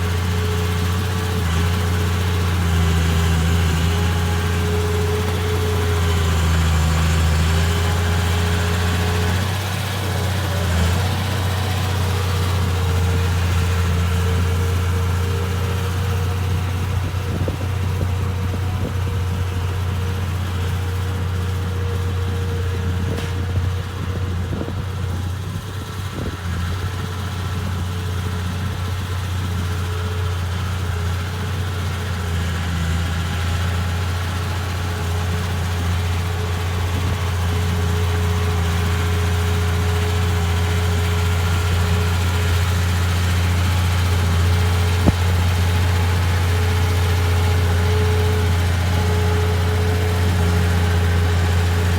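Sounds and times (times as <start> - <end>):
diesel engine humming: 0.0 - 51.9.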